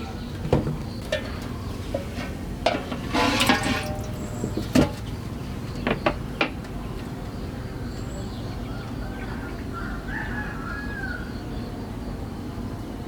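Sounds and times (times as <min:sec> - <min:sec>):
pots and utensils knocking: 0:00.4 - 0:06.6.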